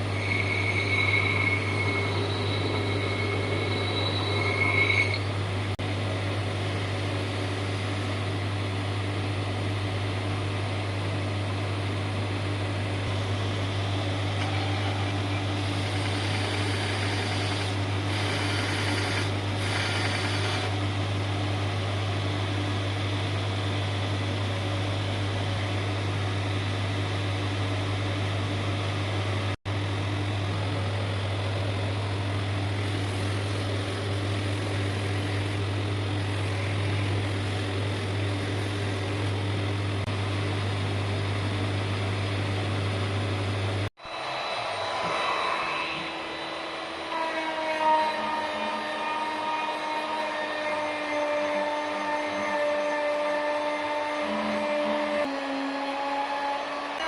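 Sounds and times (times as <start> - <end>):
power tool motor humming: 15.6 - 20.8.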